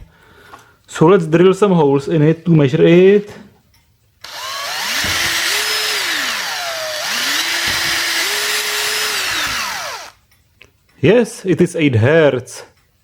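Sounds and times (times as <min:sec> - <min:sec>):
drill bit grinding hiss: 0:04.2 - 0:10.2
small electric drill motor: 0:04.2 - 0:10.2.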